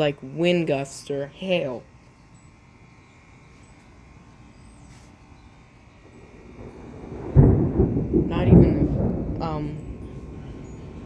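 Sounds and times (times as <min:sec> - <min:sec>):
thunder rumble and clap: 0:06.2 - 0:11.0.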